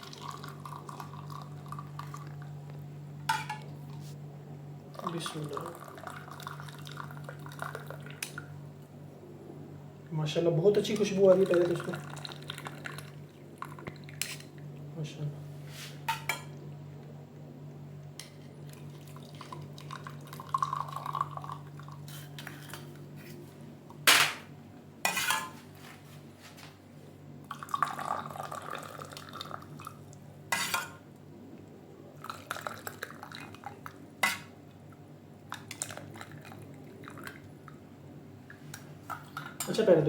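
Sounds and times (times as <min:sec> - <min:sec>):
tea being poured: 0:00.0 - 0:02.5, 0:05.0 - 0:08.2, 0:11.3 - 0:13.8, 0:18.6 - 0:22.0, 0:27.5 - 0:30.1, 0:32.2 - 0:33.9
kitchenware clinking together: 0:03.3 - 0:03.6, 0:24.1 - 0:24.5.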